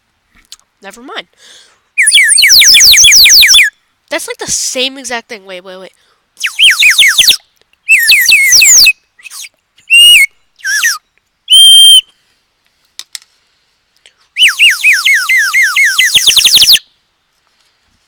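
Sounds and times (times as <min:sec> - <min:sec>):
bird-call whistle warbling: 0:02.0 - 0:03.8, 0:06.4 - 0:12.1, 0:14.4 - 0:17.0.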